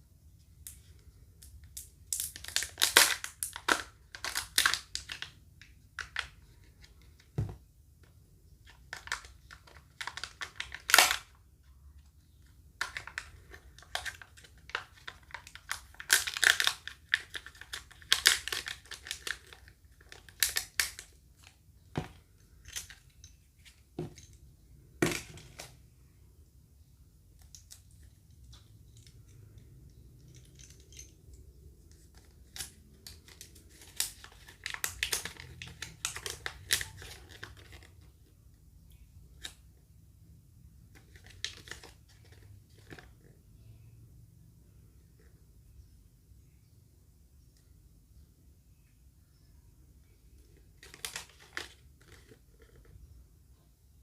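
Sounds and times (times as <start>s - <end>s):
wrapper crinkling and tearing: 2.1s - 5.3s, 8.9s - 11.3s, 12.8s - 21.2s, 32.1s - 38.0s, 41.0s - 43.0s.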